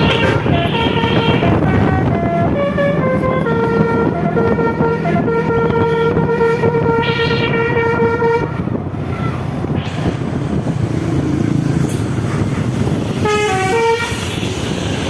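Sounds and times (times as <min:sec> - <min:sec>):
multi-tone bus horn: 0:00.0 - 0:09.0, 0:13.0 - 0:14.9
bus engine running: 0:00.0 - 0:15.0.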